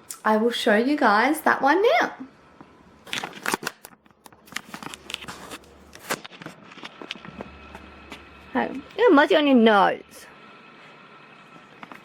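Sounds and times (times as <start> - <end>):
low steady hum: 4.1 - 12.0.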